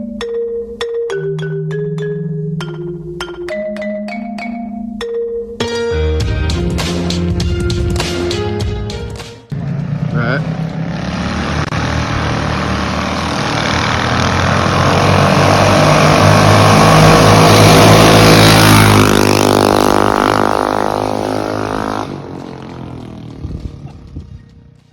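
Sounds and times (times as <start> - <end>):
mini bike engine passing by: 9.5 - 24.9.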